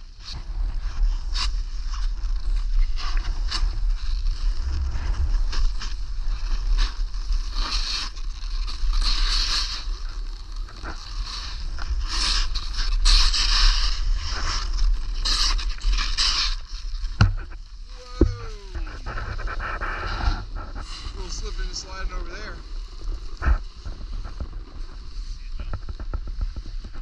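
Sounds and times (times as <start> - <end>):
skis scraping over snow: 0.2 - 27.0
low rumble: 17.2 - 21.8.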